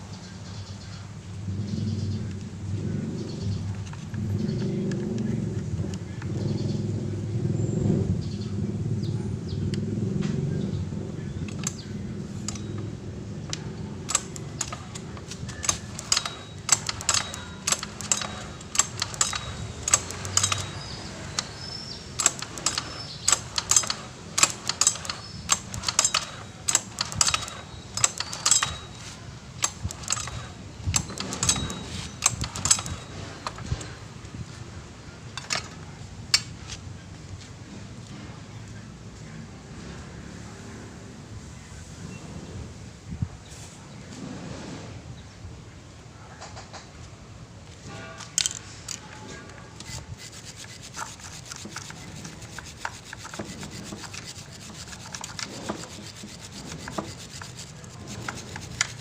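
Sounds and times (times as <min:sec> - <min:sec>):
sharp clicks and clinks of small parts: 0:11.4 - 0:34.0, 0:35.4 - 0:36.8, 0:48.2 - 0:59.0.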